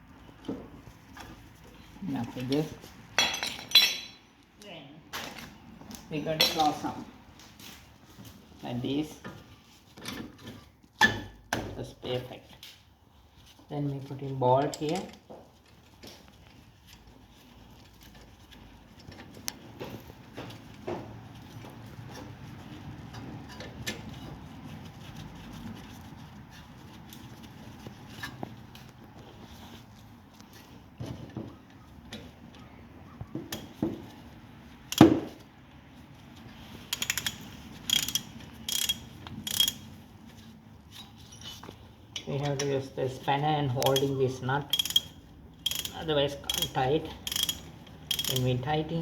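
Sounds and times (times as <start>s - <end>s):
metallic clicks and knocks: 36.9s - 39.9s, 44.7s - 48.5s.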